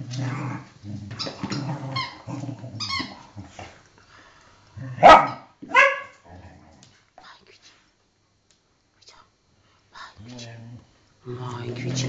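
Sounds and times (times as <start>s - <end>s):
dog growling low: 0.0s - 3.8s, 10.2s - 12.0s.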